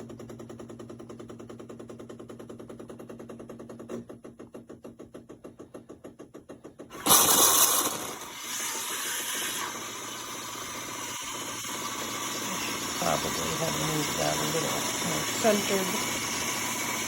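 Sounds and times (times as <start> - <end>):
coffee machine pump pulsing: 0.0 - 17.0
milk frother hissing whir: 6.9 - 17.0.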